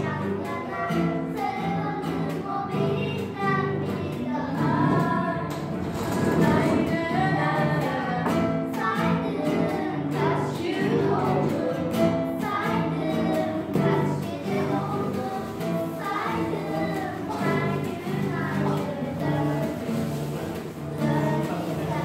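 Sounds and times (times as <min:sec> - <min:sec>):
girls singing together: 0:00.0 - 0:22.0
instrumental accompaniment: 0:00.0 - 0:22.0.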